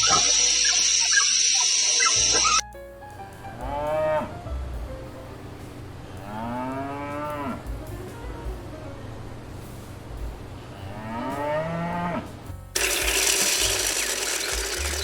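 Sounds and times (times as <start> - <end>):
cow mooing: 10.9 - 12.3.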